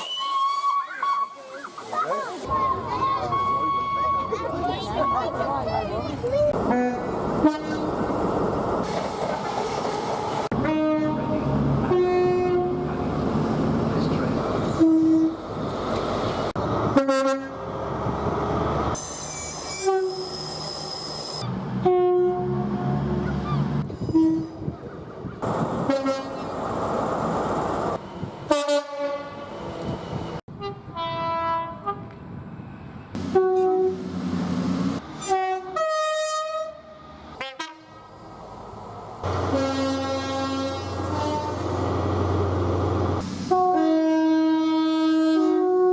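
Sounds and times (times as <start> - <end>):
passing trains noise: 0.4 - 45.9
train two-tone horns: 6.6 - 7.8, 10.5 - 12.9, 14.7 - 15.4, 16.9 - 17.6, 19.7 - 20.4, 21.8 - 23.0, 24.0 - 24.7, 25.8 - 26.5, 28.5 - 29.5, 30.5 - 32.2, 33.2 - 34.0, 35.2 - 38.1, 39.2 - 41.8, 43.4 - 45.9.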